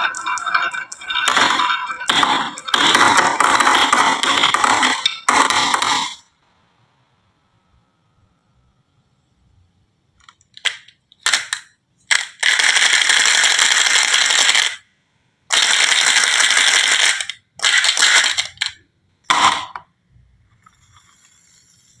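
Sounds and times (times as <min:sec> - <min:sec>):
marbles rolling on wooden run: 0:00.0 - 0:06.2.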